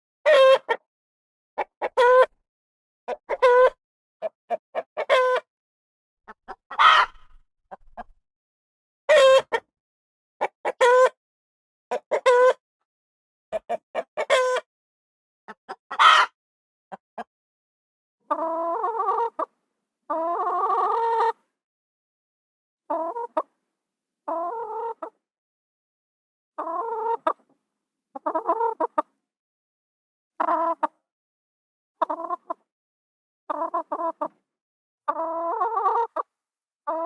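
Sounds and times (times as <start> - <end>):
chicken clucking: 0.3 - 0.8, 1.6 - 2.4, 3.1 - 5.5, 6.3 - 8.2, 9.1 - 9.6, 10.4 - 11.2, 11.9 - 12.6, 13.5 - 14.7, 15.5 - 17.3, 18.3 - 19.5, 20.1 - 21.4, 22.9 - 23.5, 24.3 - 25.2, 26.6 - 27.4, 28.2 - 29.1, 30.4 - 31.0, 32.0 - 32.6, 33.5 - 34.3, 35.1 - 36.3.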